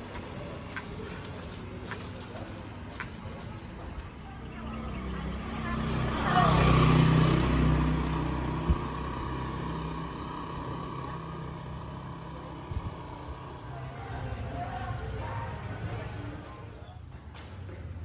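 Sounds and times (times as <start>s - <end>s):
traffic noise: 0.0s - 18.0s
vehicle engine passing: 4.4s - 16.8s.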